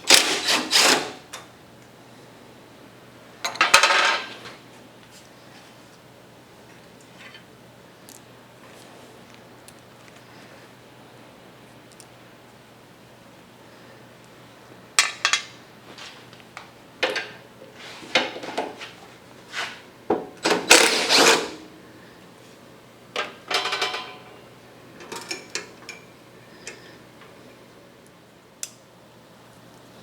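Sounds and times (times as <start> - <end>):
metal tools clanking: 23.5 - 26.1.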